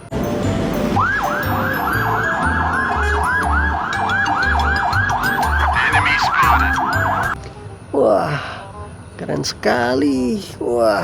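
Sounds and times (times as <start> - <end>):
fire truck siren yelping: 0.4 - 7.4.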